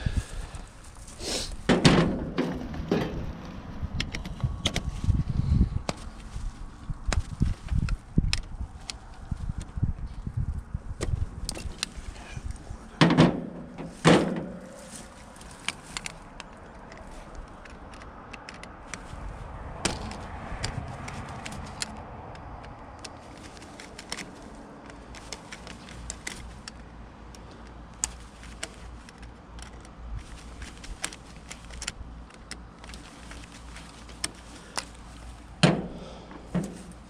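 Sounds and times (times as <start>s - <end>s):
handling clicks and knocks: 1.5s - 5.1s, 5.8s - 10.2s, 11.0s - 37.0s.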